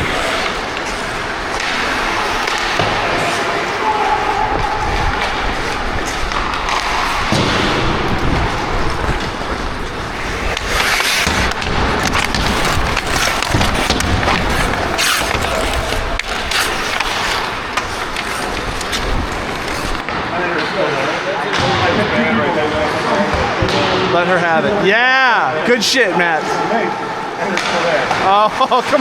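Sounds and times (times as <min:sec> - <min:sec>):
skate blades scraping ice: 0:00.0 - 0:21.3, 0:27.2 - 0:29.0.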